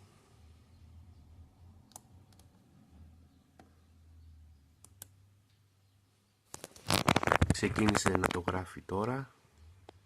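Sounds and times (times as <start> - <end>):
computer mouse clicks: 1.9 - 2.6, 4.8 - 5.2.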